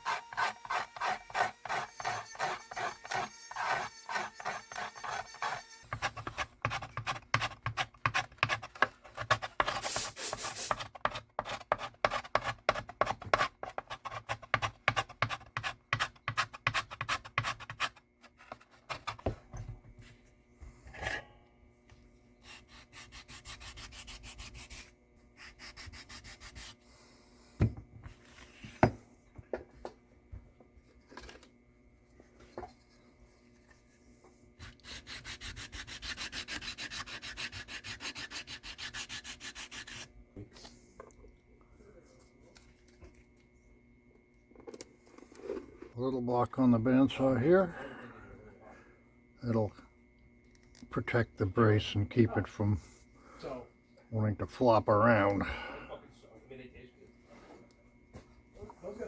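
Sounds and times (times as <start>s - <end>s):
sandpaper rubbing on wood: 0.0s - 8.6s, 22.5s - 26.8s, 34.8s - 40.1s.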